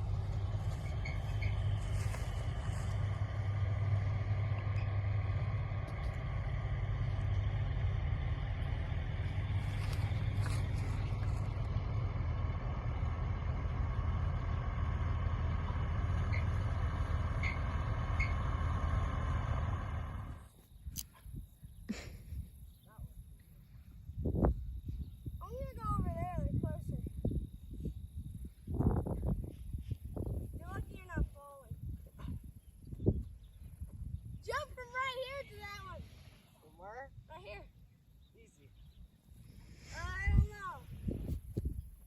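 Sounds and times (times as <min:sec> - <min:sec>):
diesel engine drone: 0:00.0 - 0:20.6.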